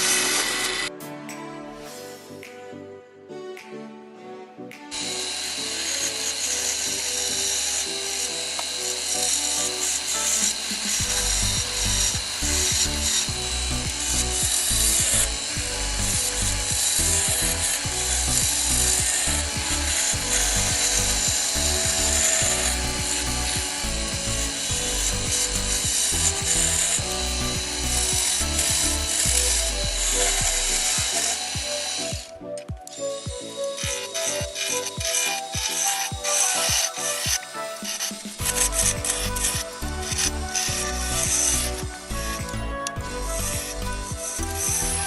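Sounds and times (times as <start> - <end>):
lathe tool rasping on wood: 5.3 - 32.1.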